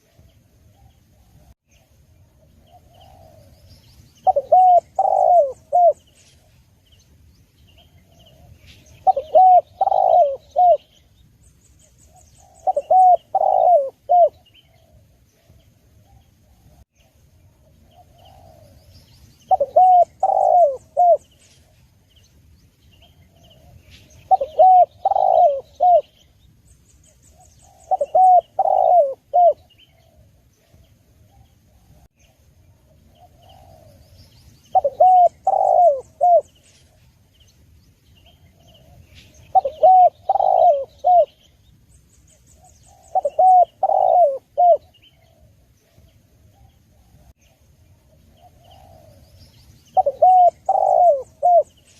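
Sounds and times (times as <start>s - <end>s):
small birds chirping and trilling: 0.0s - 51.9s
dove cooing: 2.4s - 3.6s, 4.2s - 6.0s, 7.9s - 11.0s, 12.1s - 16.8s, 17.7s - 21.8s, 23.0s - 26.3s, 27.3s - 32.1s, 32.9s - 36.6s, 38.2s - 41.5s, 42.6s - 47.3s, 48.1s - 49.4s, 50.0s - 51.9s.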